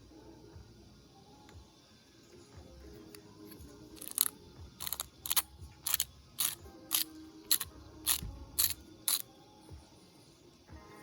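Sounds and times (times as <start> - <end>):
salt grinder grinding: 4.0 - 9.2.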